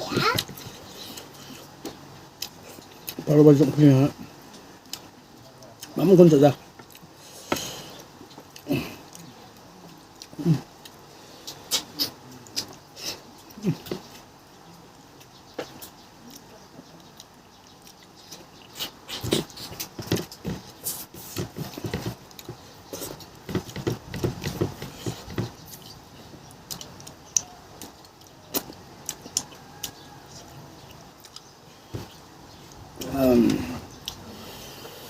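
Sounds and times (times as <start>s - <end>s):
person chewing wetly: 6.8s - 14.2s, 17.1s - 30.1s, 30.8s - 34.2s.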